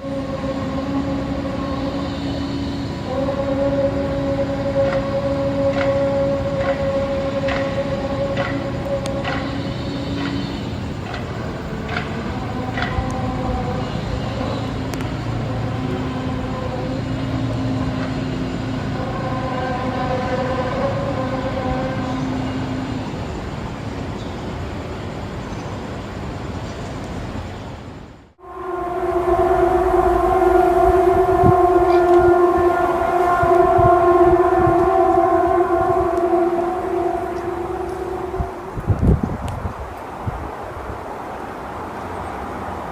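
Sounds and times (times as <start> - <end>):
drone of held tones: 0.0 - 25.6, 28.4 - 39.9
low rumbling noise: 0.0 - 42.9
low rumble: 28.4 - 40.4.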